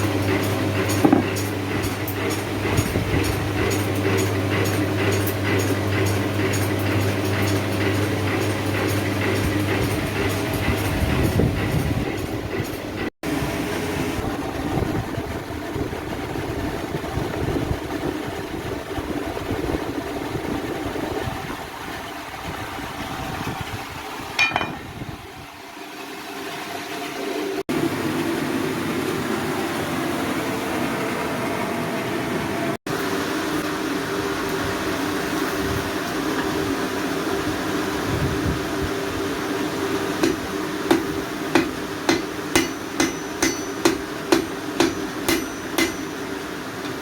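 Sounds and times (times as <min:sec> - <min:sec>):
metallic ring: 0:24.4 - 0:25.0.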